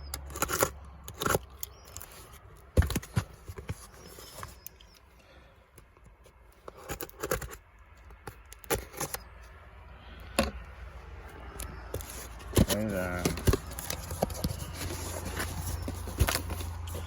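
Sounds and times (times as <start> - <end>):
packaging rustling: 11.7 - 17.0.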